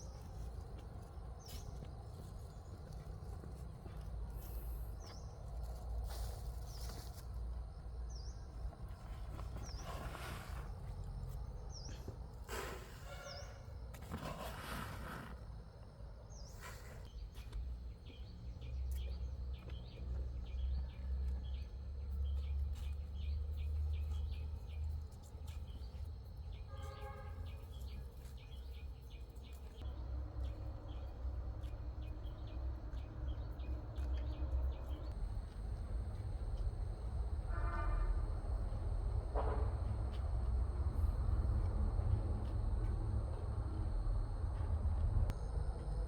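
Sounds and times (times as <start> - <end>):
birds chirping: 25.7 - 36.7
low rumble: 34.6 - 46.0.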